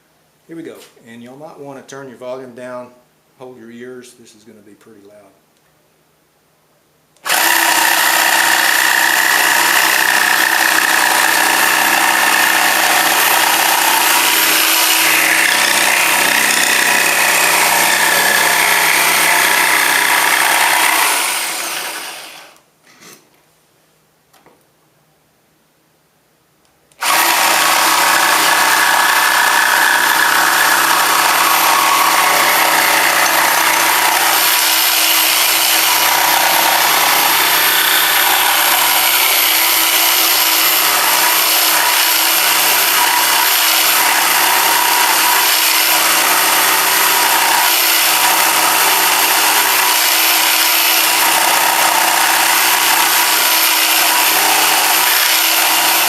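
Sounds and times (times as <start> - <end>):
jigsaw cutting plywood: 7.2 - 22.6, 27.0 - 56.0.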